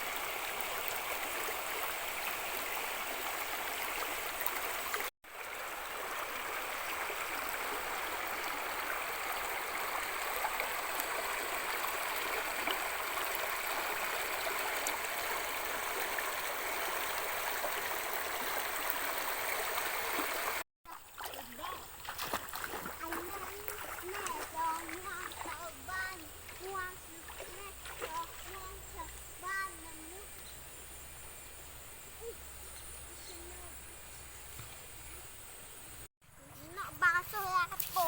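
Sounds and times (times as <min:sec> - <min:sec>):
stream rushing over rocks: 0:00.0 - 0:20.6.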